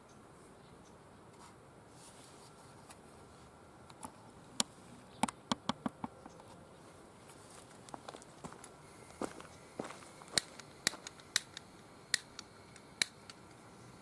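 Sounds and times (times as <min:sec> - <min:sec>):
firewood crackling and snapping: 0:09.8 - 0:13.6.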